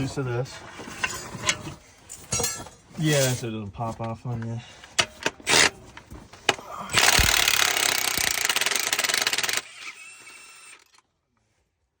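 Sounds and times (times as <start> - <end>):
impact wrench hammering: 6.9 - 9.8.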